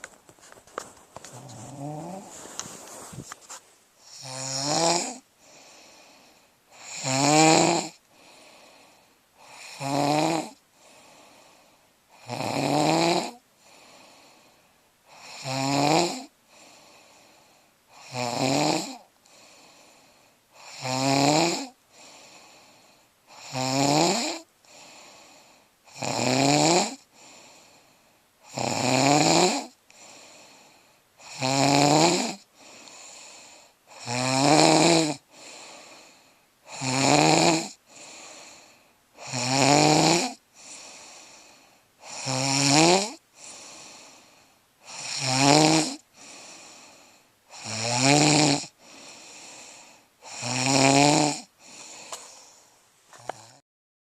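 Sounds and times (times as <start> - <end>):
soft breathing: 0.0 - 4.2, 5.2 - 6.7, 8.0 - 9.5, 10.7 - 12.0, 13.5 - 14.8, 16.4 - 17.8, 19.2 - 20.6, 21.9 - 23.2, 24.6 - 25.8, 27.1 - 28.2, 29.9 - 31.1, 32.5 - 33.8, 35.3 - 36.5, 37.8 - 39.1, 40.5 - 42.0, 43.3 - 44.6, 46.0 - 47.4, 48.7 - 50.2, 51.5 - 53.6
person snoring loudly: 1.3 - 2.6, 4.0 - 5.9, 6.7 - 8.7, 9.4 - 11.0, 12.1 - 14.0, 15.1 - 16.3, 17.9 - 19.6, 20.6 - 22.2, 23.3 - 24.9, 25.9 - 27.0, 28.4 - 30.3, 31.2 - 36.1, 36.7 - 38.6, 39.2 - 41.1, 42.0 - 44.1, 44.8 - 46.8, 47.5 - 52.6, 53.2 - 53.6.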